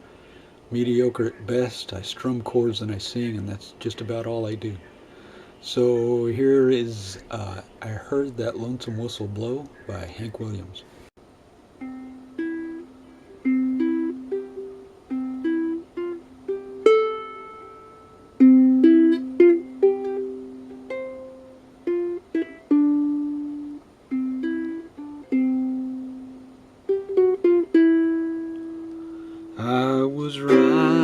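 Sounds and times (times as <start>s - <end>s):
ukulele strumming chords: 11.8s - 31.0s.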